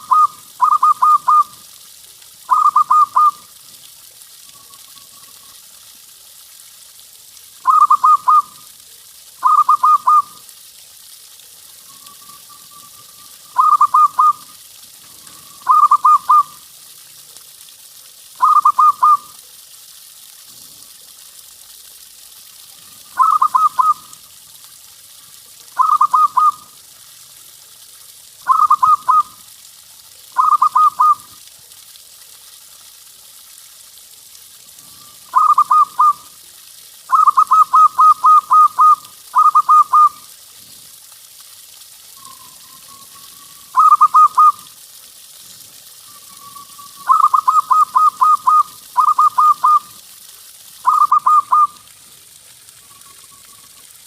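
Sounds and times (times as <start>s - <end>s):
dove cooing: 0.0s - 1.6s, 2.5s - 3.4s, 7.6s - 8.5s, 9.4s - 10.4s, 12.8s - 14.5s, 15.2s - 16.6s, 18.4s - 19.2s, 23.2s - 24.0s, 25.8s - 26.6s, 28.5s - 29.3s, 30.4s - 31.2s, 35.3s - 36.2s, 43.7s - 44.6s, 47.0s - 49.8s
steady hiss: 0.0s - 54.0s.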